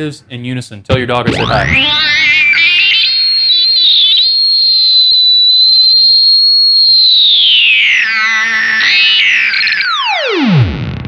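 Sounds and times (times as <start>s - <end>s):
shrill synth tone sliding down: 1.3s - 6.1s, 6.8s - 10.6s.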